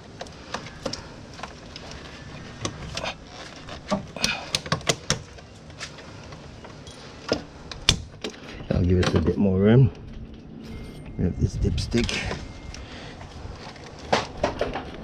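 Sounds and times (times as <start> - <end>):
hand tools clicking and knocking: 3.8 - 9.4.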